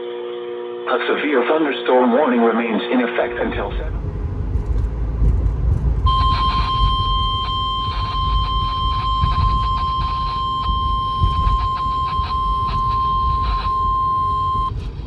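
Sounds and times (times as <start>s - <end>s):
radio static: 0.9s - 4.0s, 6.1s - 14.7s
low rumble: 3.3s - 15.0s
steady high alert beep: 6.1s - 14.7s.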